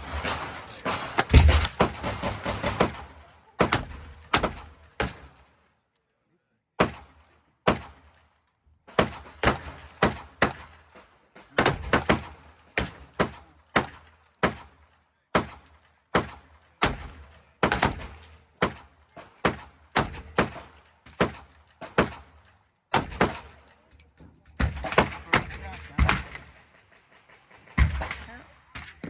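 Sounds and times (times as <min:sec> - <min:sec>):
rapid gunshots: 0:01.2 - 0:05.3, 0:24.6 - 0:28.4.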